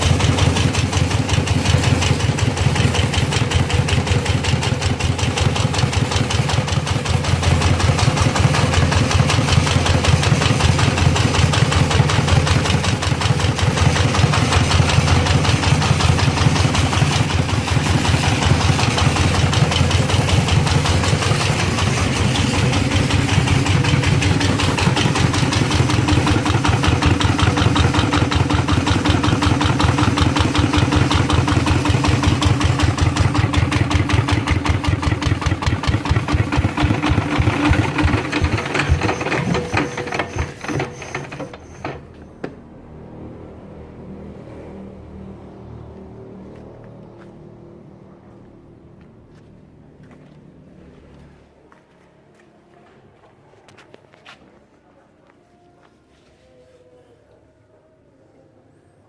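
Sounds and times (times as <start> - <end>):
diesel engine idling: 0.0 - 41.8.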